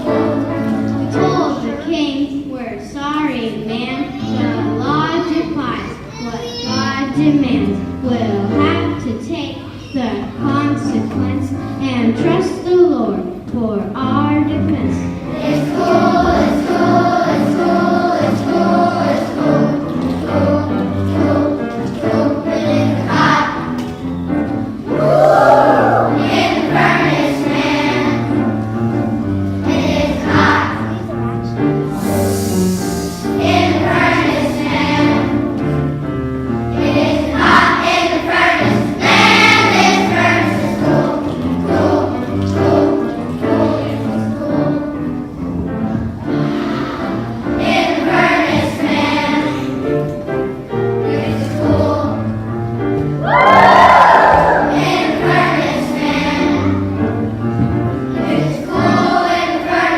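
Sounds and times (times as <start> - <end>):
children's choir singing: 0.0 - 1.9, 14.3 - 59.9
instrumental accompaniment: 14.6 - 59.9.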